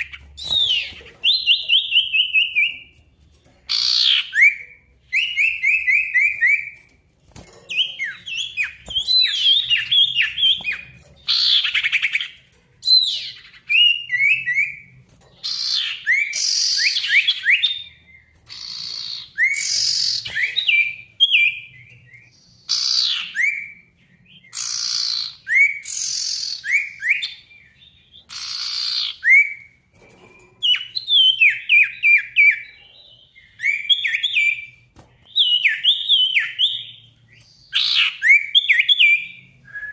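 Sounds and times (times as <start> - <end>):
songbird singing whistled notes: 3.7 - 6.9, 7.7 - 29.8, 30.7 - 39.9.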